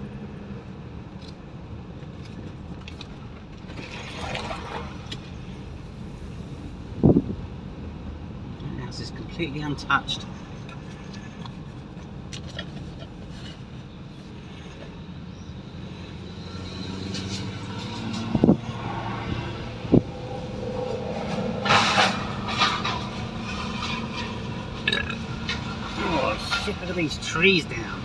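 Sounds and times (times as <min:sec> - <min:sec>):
car engine hum: 0:00.0 - 0:28.0
road noise: 0:00.0 - 0:28.0
rustling clatter: 0:10.4 - 0:15.1, 0:20.6 - 0:27.4.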